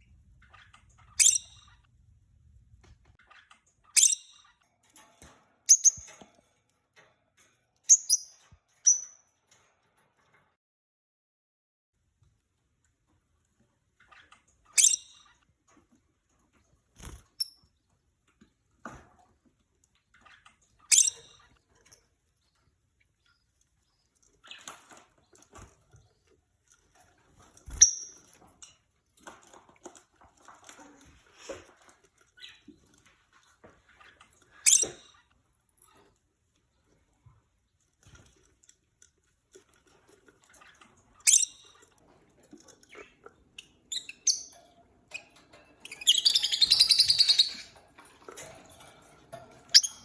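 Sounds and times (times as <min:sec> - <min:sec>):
lovebirds chirping shrilly: 0:46.0 - 0:47.7.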